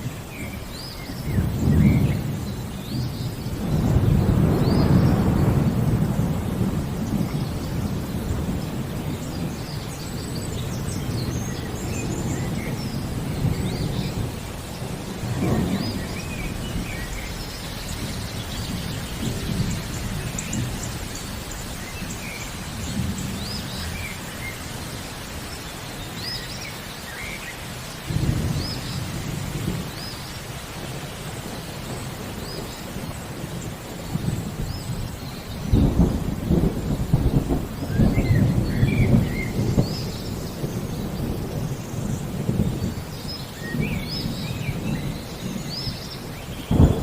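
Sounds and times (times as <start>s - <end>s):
small birds chirping: 0.0s - 47.0s
steady rain: 0.0s - 47.0s
thunder rumbling: 0.0s - 47.0s.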